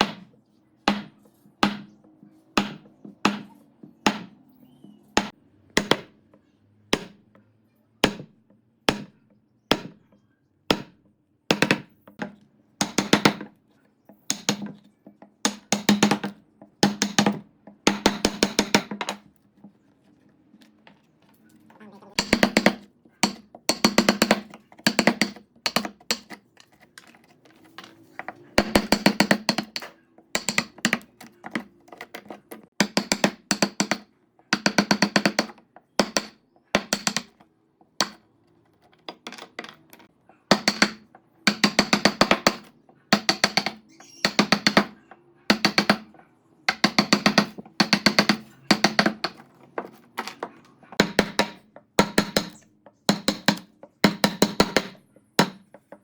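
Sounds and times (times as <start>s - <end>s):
rapid knocking on wood: 22.1s - 26.4s, 27.0s - 38.2s, 39.0s - 46.1s, 46.7s - 56.0s.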